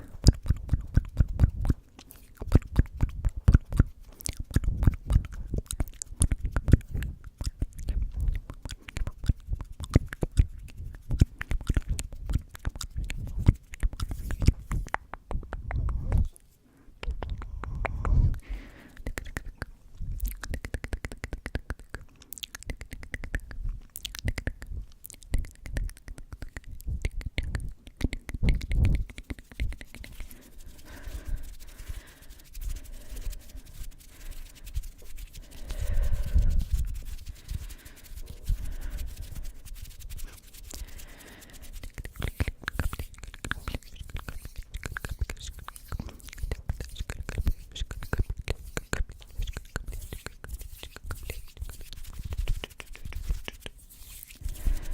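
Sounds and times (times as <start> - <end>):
soft whispering: 15.6 - 54.9
breath blown onto microphone: 17.4 - 19.2, 28.5 - 54.9.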